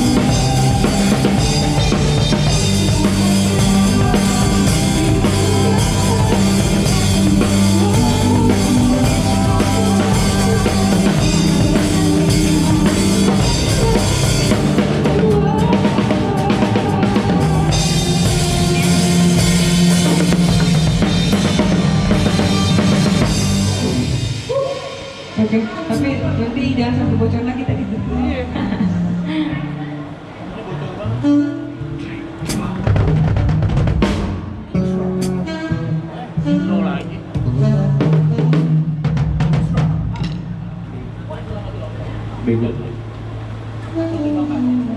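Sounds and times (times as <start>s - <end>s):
drum kit bass drum and snare: 0.0s - 26.2s, 32.5s - 35.5s, 37.4s - 40.7s
band playing instrumental: 0.0s - 26.4s
low bass notes: 0.0s - 44.9s.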